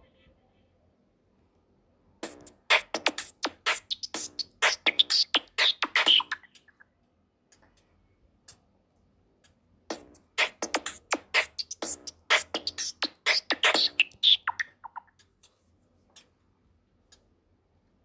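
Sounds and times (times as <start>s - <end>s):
beatbox-like ringtone: 2.2s - 6.8s, 9.9s - 15.2s.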